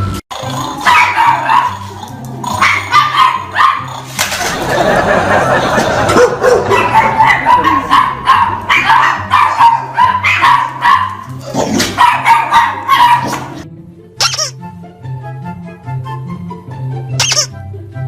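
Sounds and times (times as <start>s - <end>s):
dog barking: 0.8s - 1.9s, 2.6s - 4.0s, 6.1s - 13.6s
brief high squeak: 14.2s - 14.6s, 17.2s - 17.6s.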